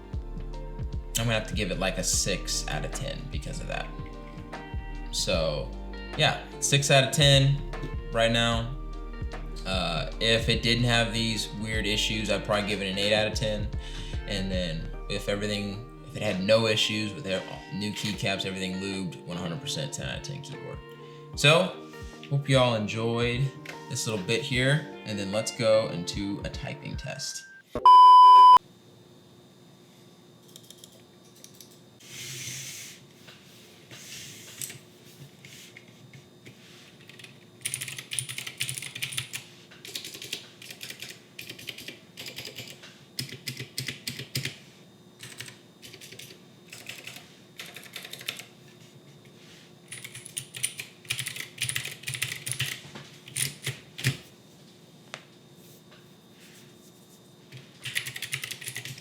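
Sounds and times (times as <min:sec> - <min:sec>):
loud beep: 0:27.4 - 0:28.6.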